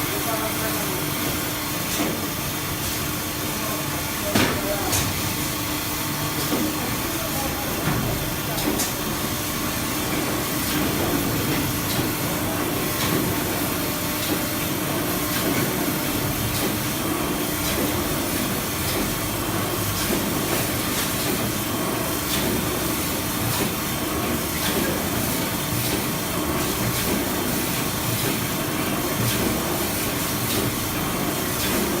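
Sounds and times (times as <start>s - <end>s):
cutting machine running with low hum: 0.0s - 32.0s.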